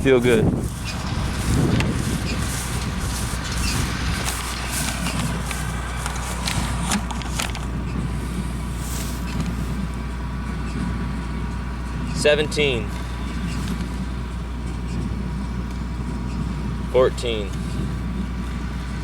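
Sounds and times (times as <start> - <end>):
footsteps crunching in hay: 0.0 - 10.0
tractor engine idling: 0.0 - 19.0.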